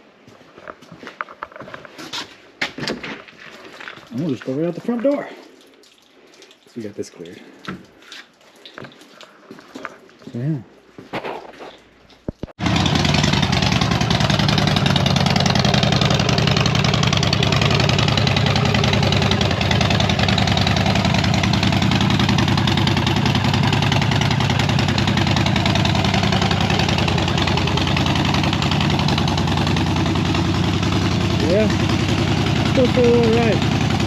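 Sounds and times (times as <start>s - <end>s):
motorcycle engine starting and idling: 12.6s - 34.0s.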